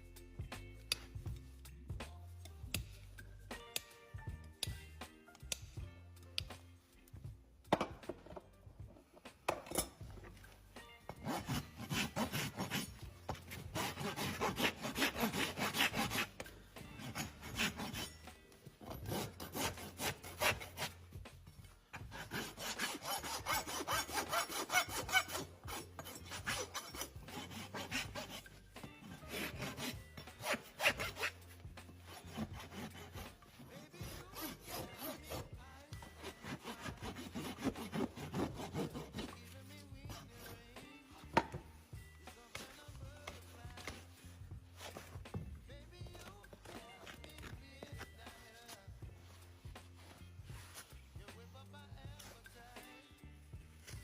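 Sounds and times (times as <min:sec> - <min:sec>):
rasp filing a hoof: 0:11.1 - 0:41.6, 0:42.3 - 0:51.3, 0:51.9 - 0:52.7.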